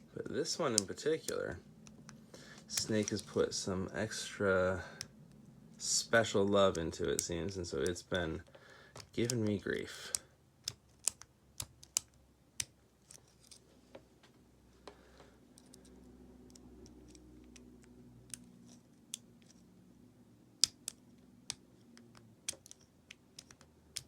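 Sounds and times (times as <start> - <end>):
lock pick metal clicks: 10.1 - 13.6, 20.6 - 24.0.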